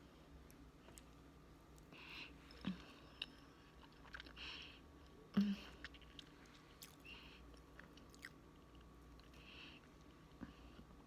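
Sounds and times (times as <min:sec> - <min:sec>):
person chewing: 0:05.8 - 0:10.2.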